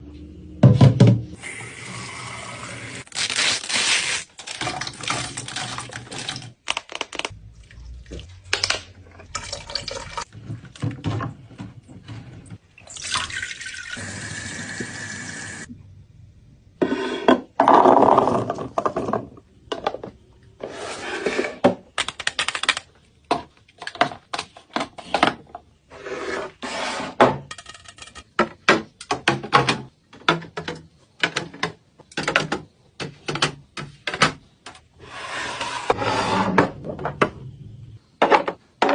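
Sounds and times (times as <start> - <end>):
liquid pouring into containers: 7.4 - 10.3, 12.8 - 14.6.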